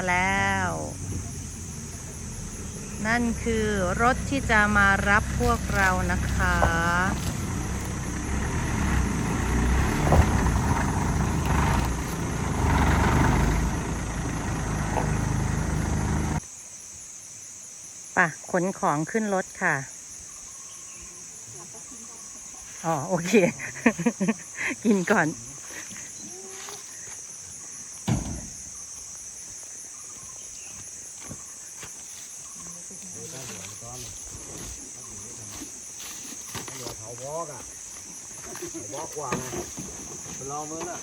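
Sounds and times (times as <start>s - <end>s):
insects trilling: 0.0s - 41.0s
vehicle engine humming: 0.2s - 16.4s
dull thump: 9.5s - 12.0s, 28.0s - 28.7s.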